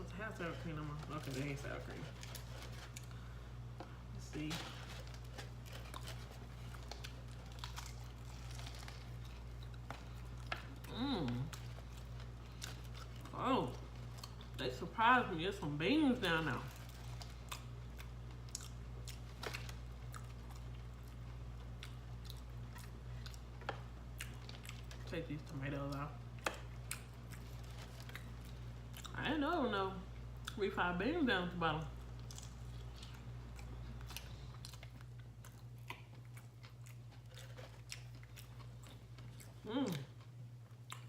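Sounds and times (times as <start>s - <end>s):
steady low hum: 0.0s - 41.0s
chewing with wet mouth smacks: 16.8s - 25.1s, 25.9s - 29.2s, 32.1s - 41.0s.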